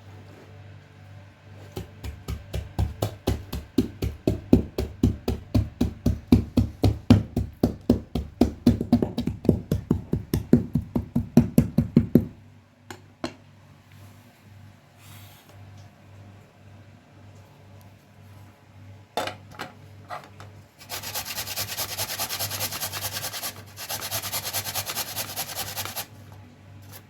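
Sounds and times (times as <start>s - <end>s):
cleaver chopping on a board: 1.8s - 12.3s.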